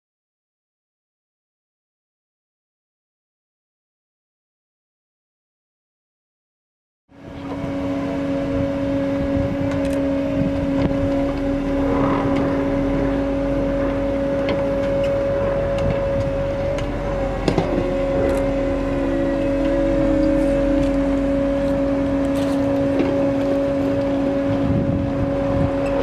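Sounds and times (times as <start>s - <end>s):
machine hum: 7.2s - 26.0s
rumbling noise: 8.4s - 26.0s.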